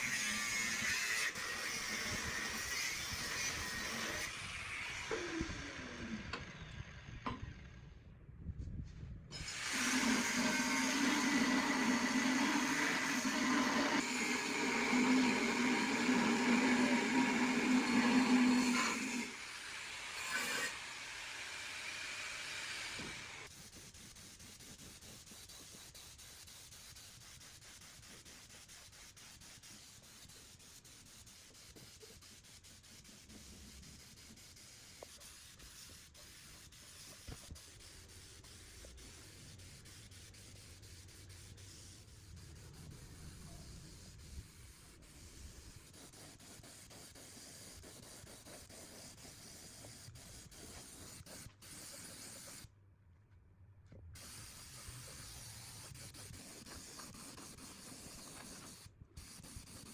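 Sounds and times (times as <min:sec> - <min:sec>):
hand rubbing or sanding: 0:09.7 - 0:19.3, 0:23.4 - 0:52.7, 0:54.2 - 0:59.9.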